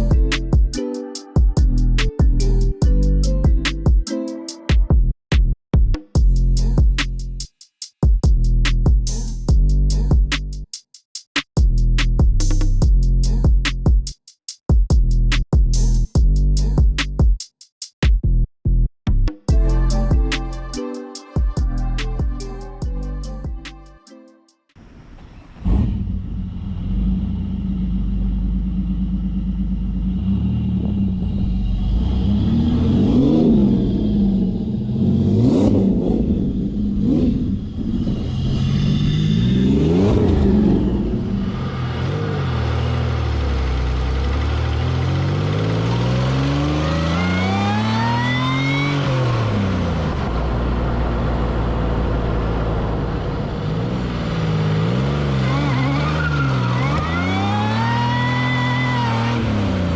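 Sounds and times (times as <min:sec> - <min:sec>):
car engine revving: 0:25.5 - 0:59.9.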